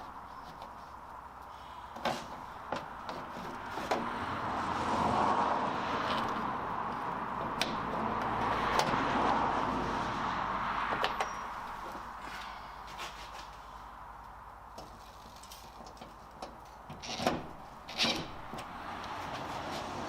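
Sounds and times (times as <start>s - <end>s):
vehicle passing: 3.5s - 14.6s, 18.2s - 20.0s.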